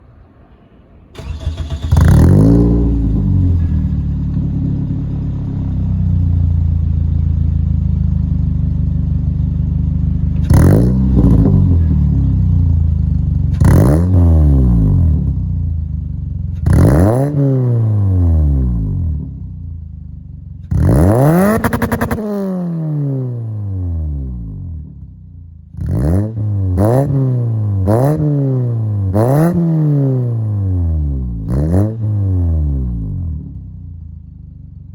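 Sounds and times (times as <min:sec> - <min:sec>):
car engine starting: 0:00.0 - 0:25.0
car engine idling and revving: 0:00.0 - 0:34.9.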